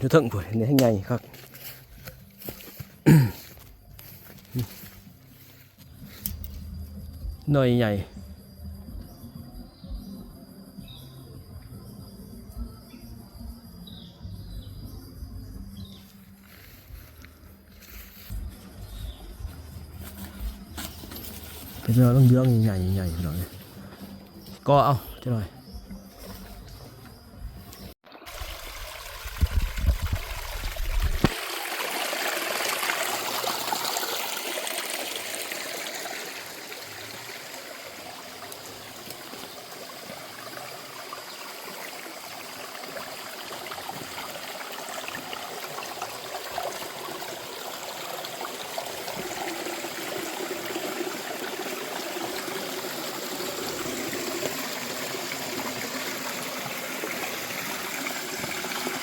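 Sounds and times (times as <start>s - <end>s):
stream water rushing: 28.1s - 59.0s.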